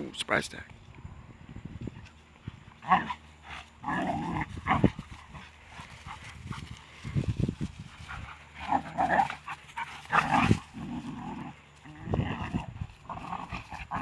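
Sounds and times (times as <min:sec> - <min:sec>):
dogs snarling and growling: 0:02.5 - 0:07.2, 0:07.8 - 0:14.0.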